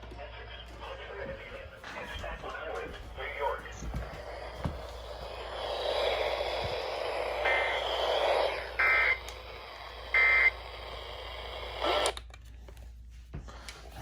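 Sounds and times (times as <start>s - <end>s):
radio hiss: 0.1s - 12.2s
harsh data bursts: 3.1s - 12.2s.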